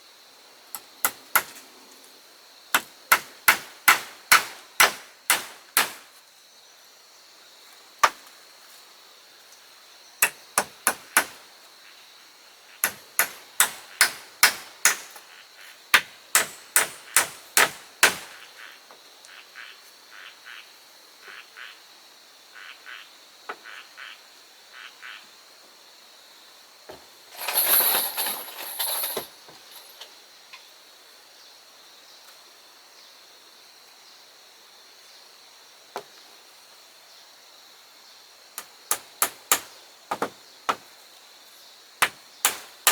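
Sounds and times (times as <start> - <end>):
sharp strikes on wood: 2.8 - 6.1, 10.2 - 11.4, 12.8 - 15.2, 16.0 - 18.4, 38.9 - 40.8, 42.0 - 42.9
rustling scrape: 27.3 - 30.0.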